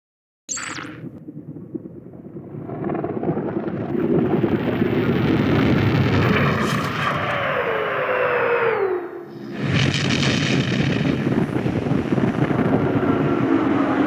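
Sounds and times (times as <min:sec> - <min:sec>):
rumbling rush of noise: 0:01.0 - 0:14.0.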